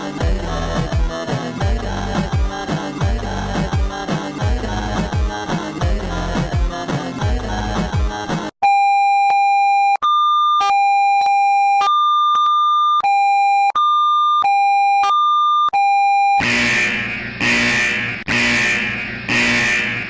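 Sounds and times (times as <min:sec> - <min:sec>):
electronic music: 0:00.0 - 0:08.5, 0:16.4 - 0:20.0
buzzy electronic alert tone: 0:16.4 - 0:20.0
loud noisy sound: 0:16.5 - 0:20.0.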